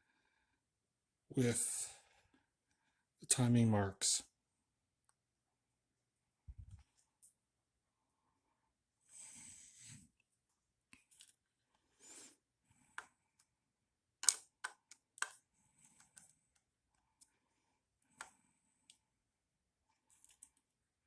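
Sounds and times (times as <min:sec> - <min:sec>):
small metal clicks: 0:14.2 - 0:15.4.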